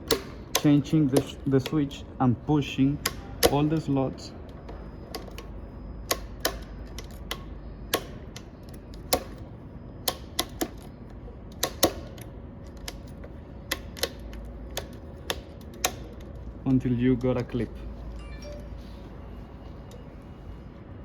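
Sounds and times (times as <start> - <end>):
plastic switch parts snapping: 0.0 - 1.8, 6.1 - 9.4, 11.5 - 13.1, 13.7 - 16.3.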